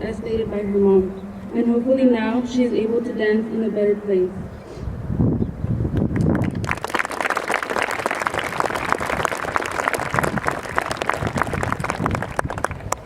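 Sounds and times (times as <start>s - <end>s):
audience applauding: 6.1s - 13.0s.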